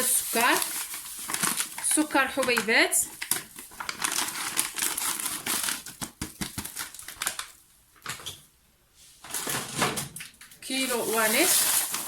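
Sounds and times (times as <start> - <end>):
plastic bag crinkling: 0.0 - 7.6, 10.7 - 12.0.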